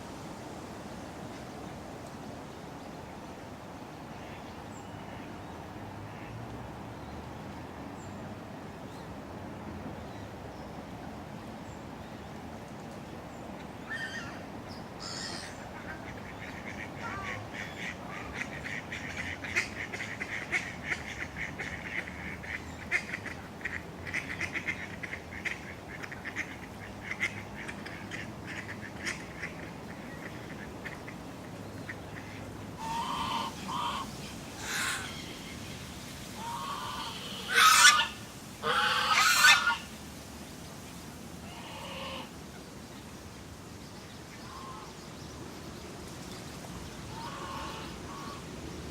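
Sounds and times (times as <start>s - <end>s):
distant traffic hum: 0.0s - 48.9s
waterfowl calling: 32.1s - 35.6s, 36.4s - 39.9s, 41.4s - 42.3s, 44.4s - 45.0s, 47.1s - 48.5s.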